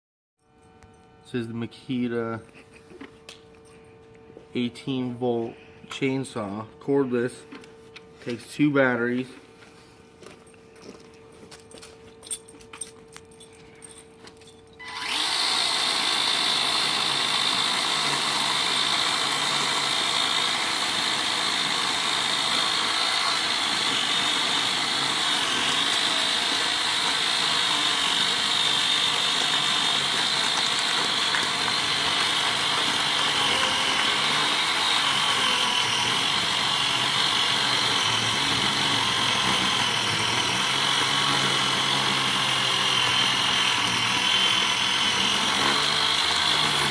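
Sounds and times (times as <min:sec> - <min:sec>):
electric chainsaw whining: 0:14.8 - 0:46.9.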